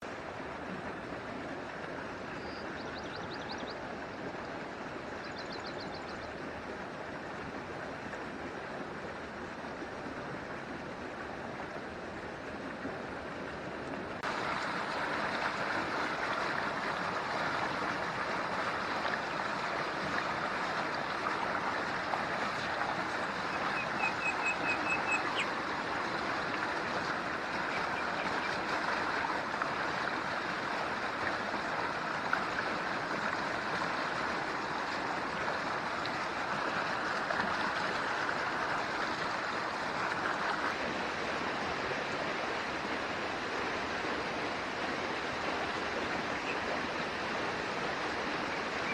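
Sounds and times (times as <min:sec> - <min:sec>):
stream flowing: 0:00.0 - 0:48.9.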